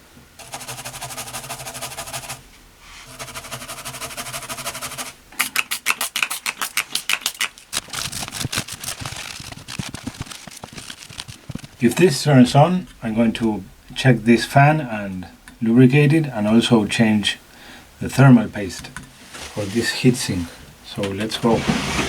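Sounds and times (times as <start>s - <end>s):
brush scrubbing circuit board: 0.4s - 12.0s.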